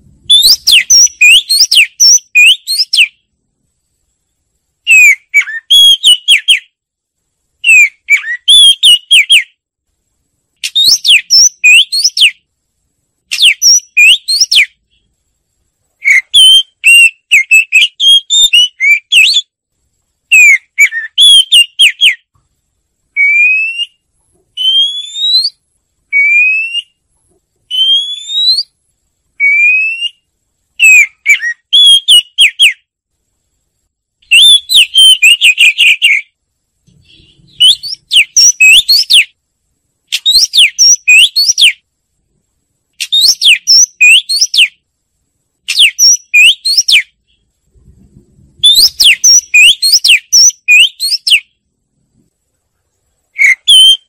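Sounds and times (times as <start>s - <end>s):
bird singing whistled phrases: 0.3s - 3.2s, 4.9s - 6.7s, 7.6s - 9.6s, 10.6s - 12.4s, 13.3s - 14.8s, 16.0s - 19.5s, 20.3s - 22.3s, 23.2s - 24.0s, 24.6s - 27.0s, 27.7s - 28.8s, 29.4s - 32.8s, 34.3s - 36.3s, 36.9s - 39.4s, 40.1s - 41.8s, 43.0s - 44.8s, 45.7s - 47.4s, 48.6s - 51.5s, 53.4s - 54.0s.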